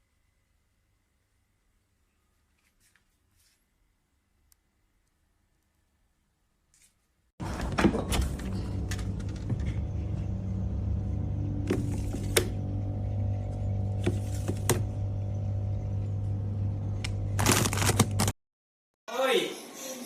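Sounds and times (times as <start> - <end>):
low mechanical hum: 7.4 - 18.3.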